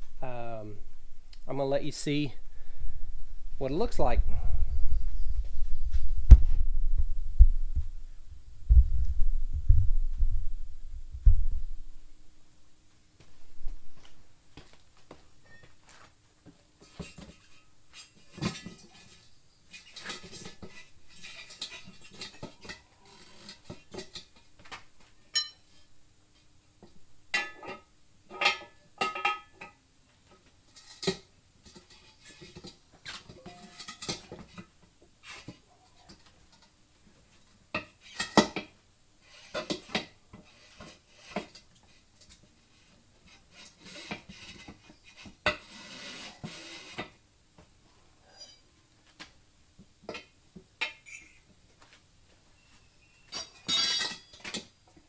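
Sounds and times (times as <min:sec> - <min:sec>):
metal tools clanking on wheel: 0:16.9 - 0:24.5, 0:30.7 - 0:34.6, 0:53.3 - 0:54.7.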